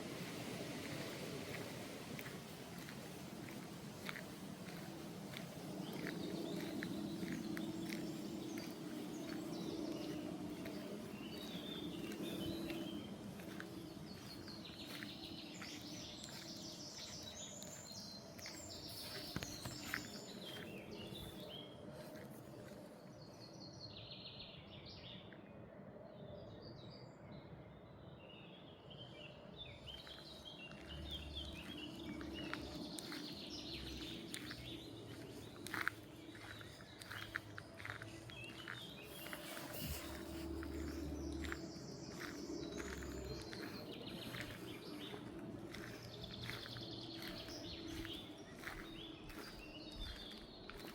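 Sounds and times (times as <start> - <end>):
outdoor background noise: 0.0 - 50.9
songbirds chirping: 0.0 - 50.9
low hum: 30.8 - 48.9.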